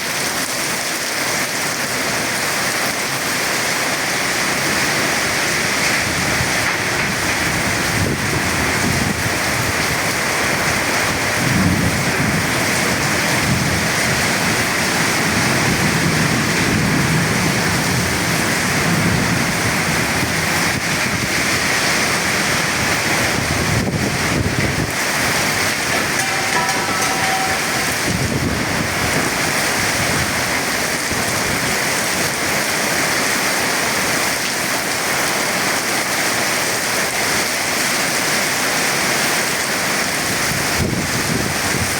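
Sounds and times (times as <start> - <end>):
heavy rain falling: 0.0 - 41.9
thunder rumbling: 23.0 - 30.4.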